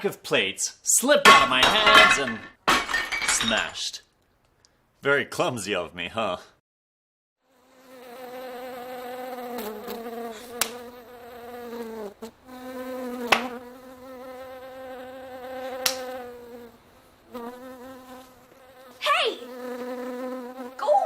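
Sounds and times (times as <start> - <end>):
flying insect buzzing: 7.4 - 21.0
sharp smacks: 10.6 - 10.8, 13.3 - 13.5, 15.8 - 16.1.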